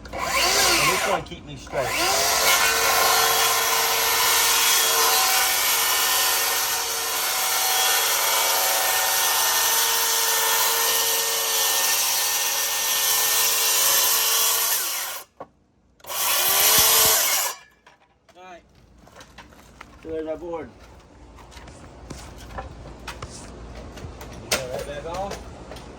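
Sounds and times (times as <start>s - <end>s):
circular saw cutting wood: 0.0s - 15.3s, 16.0s - 17.7s.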